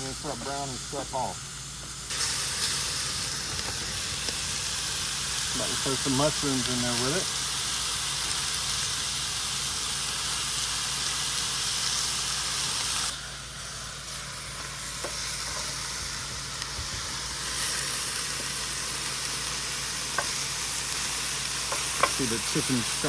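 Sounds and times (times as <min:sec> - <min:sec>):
food sizzling on a griddle: 0:00.0 - 0:23.0.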